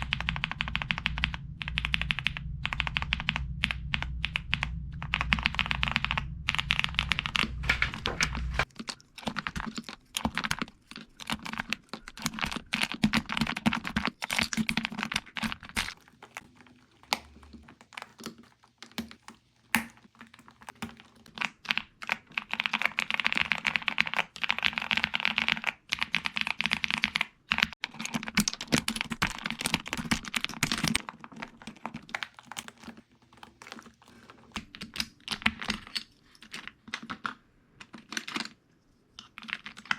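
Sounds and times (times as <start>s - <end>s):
mechanical keyboard typing: 0.0s - 38.5s.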